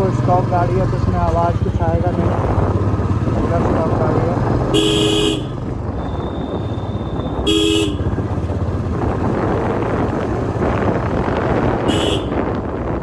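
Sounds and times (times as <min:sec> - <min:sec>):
motorcycle engine running: 0:00.0 - 0:13.0
horn toots: 0:04.7 - 0:08.1, 0:11.8 - 0:12.4.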